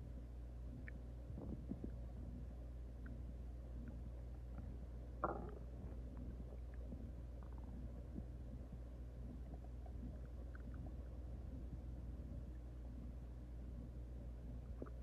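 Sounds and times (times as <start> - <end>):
steady low hum: 0.0 - 15.0
stomach gurgling: 0.7 - 15.0.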